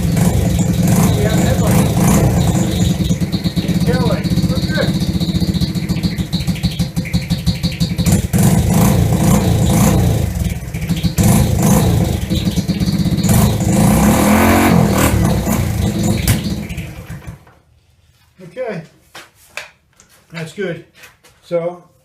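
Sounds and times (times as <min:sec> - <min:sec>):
small quad engine revving: 0:00.0 - 0:17.4.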